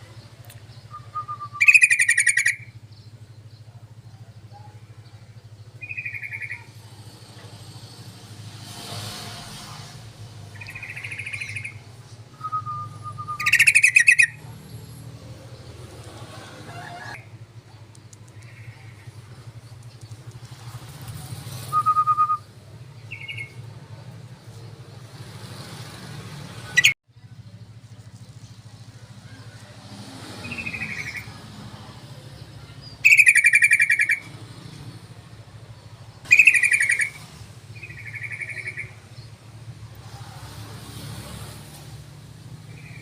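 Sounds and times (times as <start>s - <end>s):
bird chattering calls: 0.6s - 2.9s, 5.8s - 6.8s, 10.5s - 14.7s, 18.1s - 20.0s, 32.6s - 34.4s, 36.2s - 39.0s.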